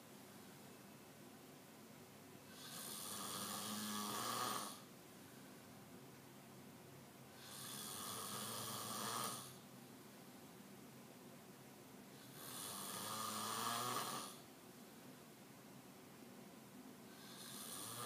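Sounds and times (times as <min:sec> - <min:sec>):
snoring: 0:02.5 - 0:04.9, 0:07.3 - 0:09.6, 0:12.2 - 0:14.5, 0:17.1 - 0:18.0.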